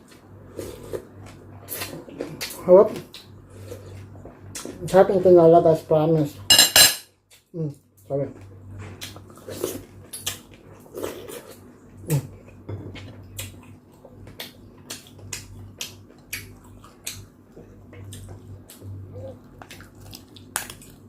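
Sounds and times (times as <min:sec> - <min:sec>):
steady low hum: 0:00.0 - 0:21.0
utensils clinking on dishes: 0:06.5 - 0:07.0
wet chewing and mouth clicks: 0:13.0 - 0:17.3, 0:17.9 - 0:21.0.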